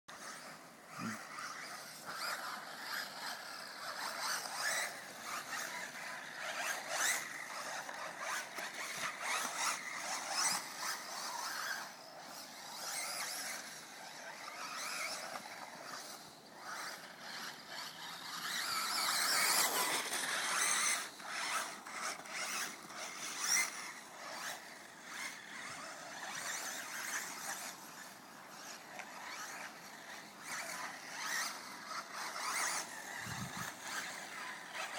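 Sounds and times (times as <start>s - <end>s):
rc car motor whine: 0.1s - 34.9s.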